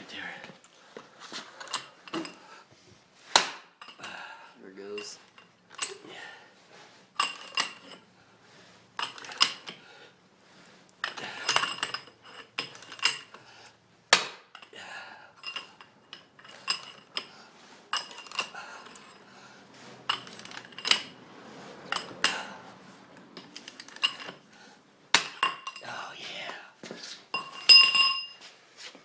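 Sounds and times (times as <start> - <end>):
metal tools clanking: 1.4 - 2.6, 3.8 - 6.4, 7.1 - 8.2, 8.9 - 10.0, 11.0 - 13.5, 14.5 - 26.0, 27.3 - 28.5.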